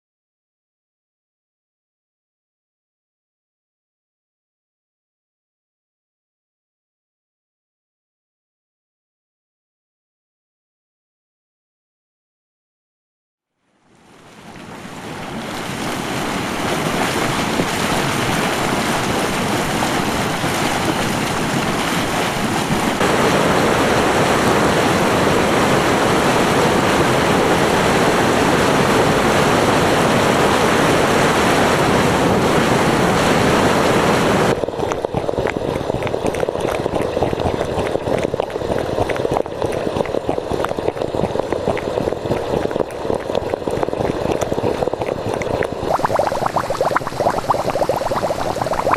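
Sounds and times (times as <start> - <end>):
hissing steam and boiling water: 14.0 - 48.9.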